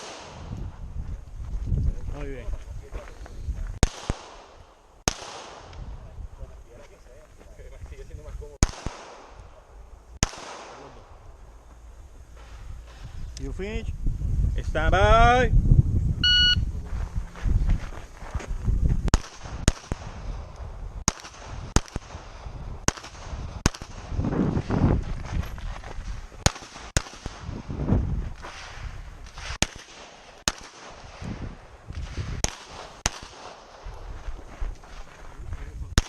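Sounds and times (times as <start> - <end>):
pistol shots: 3.8 - 5.7, 8.6 - 9.5, 10.2 - 11.2, 19.1 - 20.2, 21.0 - 24.1, 29.3 - 31.3, 32.0 - 33.9.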